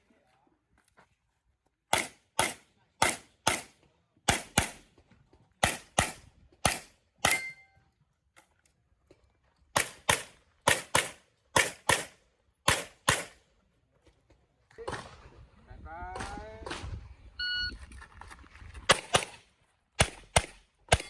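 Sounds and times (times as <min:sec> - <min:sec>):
rapid handgun fire: 0:01.9 - 0:03.7, 0:04.3 - 0:04.8, 0:05.6 - 0:07.4, 0:09.8 - 0:13.4, 0:20.0 - 0:21.0.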